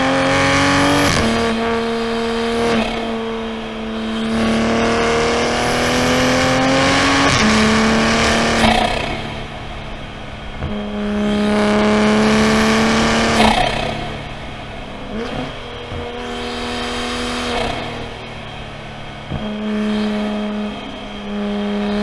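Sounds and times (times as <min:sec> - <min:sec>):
car engine revving: 0:00.0 - 0:22.0
thin high whine: 0:04.0 - 0:09.7.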